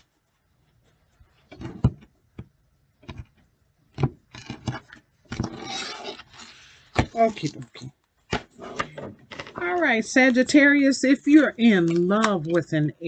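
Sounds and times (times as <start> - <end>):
cards tapping and knocking: 1.5 - 3.4.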